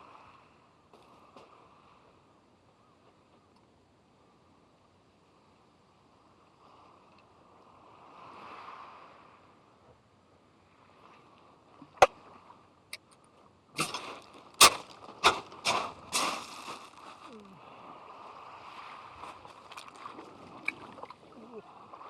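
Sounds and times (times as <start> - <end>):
soft wash of water: 6.2 - 12.8, 15.2 - 22.0
water sloshing strokes: 18.6 - 22.0.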